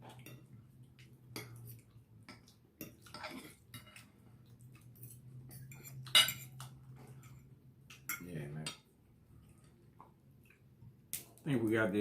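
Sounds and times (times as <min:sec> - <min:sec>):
cutlery clinking on plates: 0:05.0 - 0:07.4.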